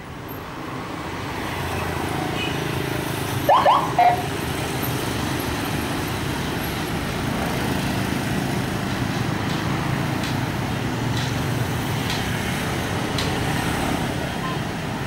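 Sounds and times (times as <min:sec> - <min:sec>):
road traffic rumble: 0:00.0 - 0:15.0.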